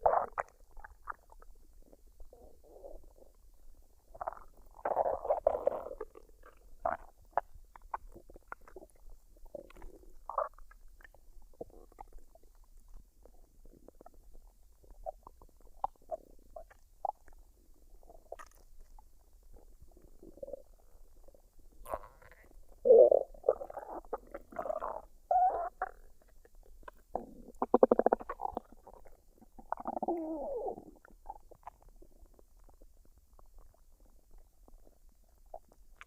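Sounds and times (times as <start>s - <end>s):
stomach gurgling: 0.0s - 36.0s.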